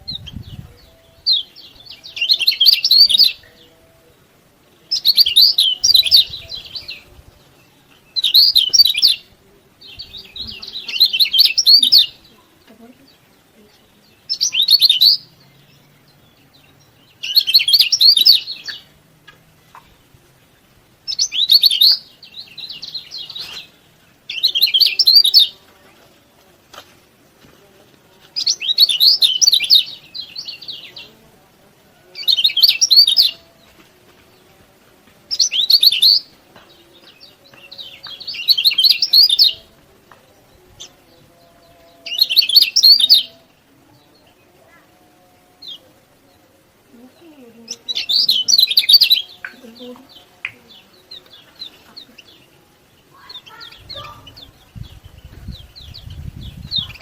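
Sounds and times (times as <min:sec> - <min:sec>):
bird chirping rapidly: 0:17.2 - 0:18.9, 0:53.1 - 0:57.0.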